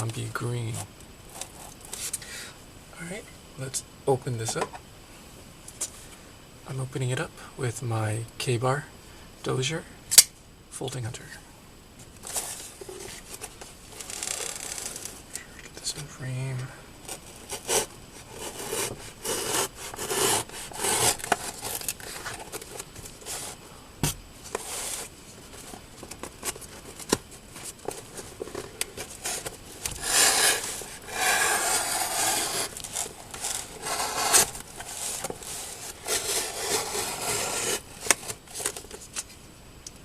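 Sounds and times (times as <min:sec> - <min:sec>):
box handling clicks and rubbing: 0:17.1 - 0:23.6, 0:24.5 - 0:39.3
knife cutting through packaging: 0:17.5 - 0:22.7, 0:29.0 - 0:38.8.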